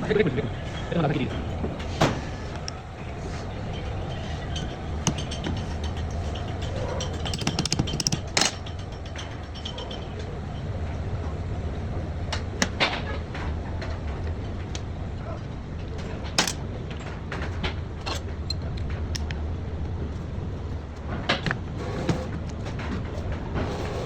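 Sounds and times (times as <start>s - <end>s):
sharp knocks and clicks: 4.7s - 9.9s.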